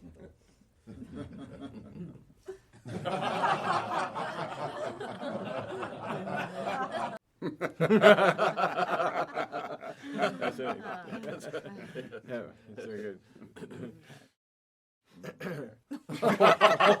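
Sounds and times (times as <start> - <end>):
people laughing: 0.0 - 14.2, 15.9 - 17.0
people talking: 10.2 - 13.2.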